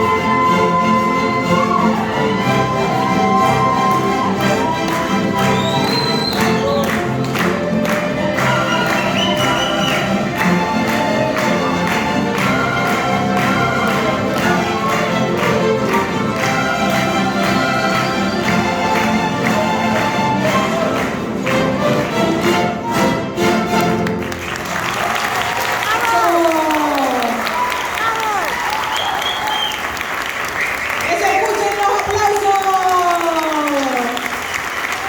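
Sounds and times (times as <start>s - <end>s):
string ensemble playing lively tune: 0.0s - 26.6s.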